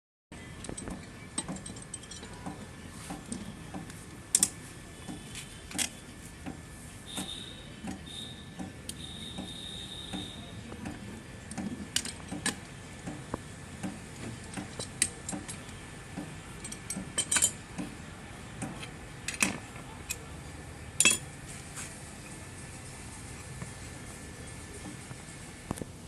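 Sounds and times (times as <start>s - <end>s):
hand tools clicking and knocking: 0.5s - 6.6s, 7.2s - 18.0s, 21.0s - 21.3s.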